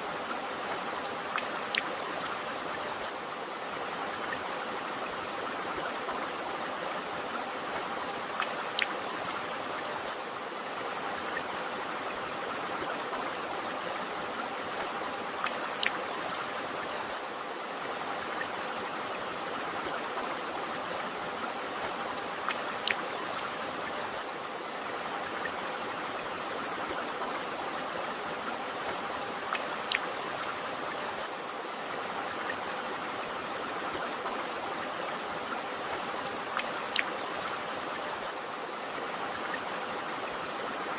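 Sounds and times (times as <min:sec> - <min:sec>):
stream rushing: 0:00.0 - 0:40.9
sharp water splashes: 0:29.2 - 0:30.6, 0:36.2 - 0:38.4.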